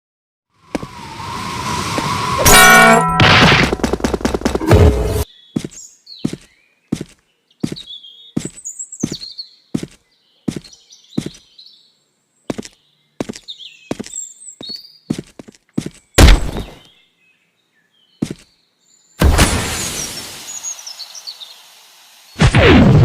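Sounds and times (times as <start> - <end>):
loud ringing blast: 2.3 - 3.8
cartoon hits: 2.4 - 4.0.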